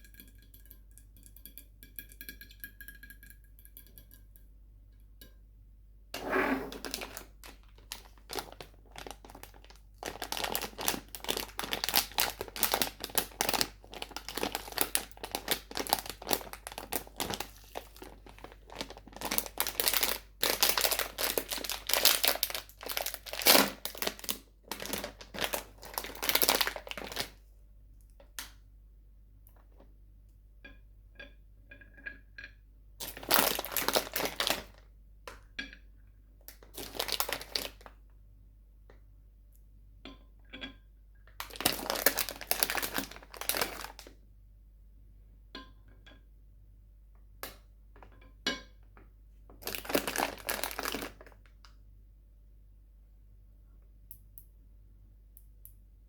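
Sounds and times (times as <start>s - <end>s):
plastic wrappers crinkling: 6.7s - 27.4s, 33.0s - 34.8s, 36.5s - 37.9s, 41.4s - 44.1s, 49.6s - 51.4s.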